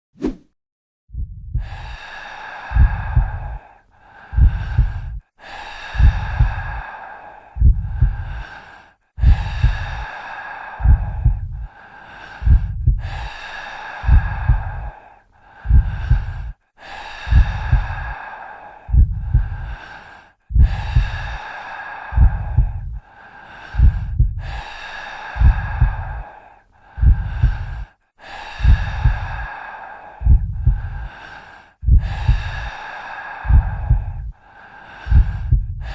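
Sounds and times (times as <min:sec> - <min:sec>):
heartbeat thumping: 0:01.1 - 0:02.0, 0:02.7 - 0:03.6, 0:04.3 - 0:05.2, 0:05.9 - 0:06.8, 0:07.6 - 0:08.5, 0:09.2 - 0:10.0, 0:10.8 - 0:11.7, 0:12.4 - 0:13.3, 0:14.0 - 0:14.9, 0:15.6 - 0:16.5, 0:17.3 - 0:18.2, 0:18.9 - 0:19.8, 0:20.5 - 0:21.4, 0:22.2 - 0:23.0, 0:23.7 - 0:24.6, 0:25.4 - 0:26.2, 0:27.0 - 0:27.9, 0:28.6 - 0:29.4, 0:30.2 - 0:31.1, 0:31.8 - 0:32.7, 0:33.5 - 0:34.3, 0:35.1 - 0:35.9
heavy breathing: 0:01.5 - 0:35.9.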